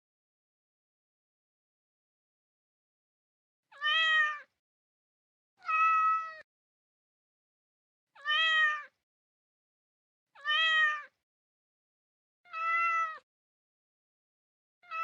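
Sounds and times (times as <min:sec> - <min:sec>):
cat meowing: 0:03.7 - 0:04.5, 0:05.6 - 0:06.5, 0:08.2 - 0:09.0, 0:10.4 - 0:11.2, 0:12.5 - 0:13.3.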